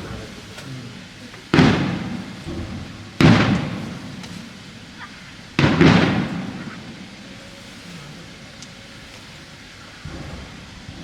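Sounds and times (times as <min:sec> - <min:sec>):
fireworks booming: 0:00.0 - 0:11.0.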